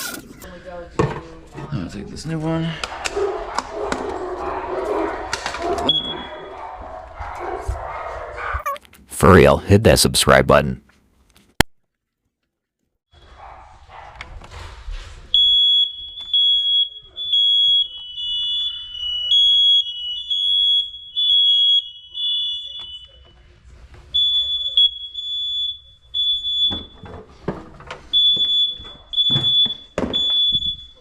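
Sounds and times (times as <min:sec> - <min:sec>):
smoke detector alarm beeps: 0:05.9 - 0:06.5, 0:15.3 - 0:23.4, 0:24.1 - 0:27.2, 0:28.1 - 0:31.0.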